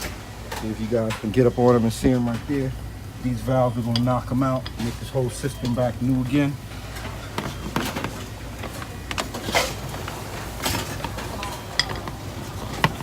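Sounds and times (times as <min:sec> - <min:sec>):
clicks and knocks: 0:07.0 - 0:13.0.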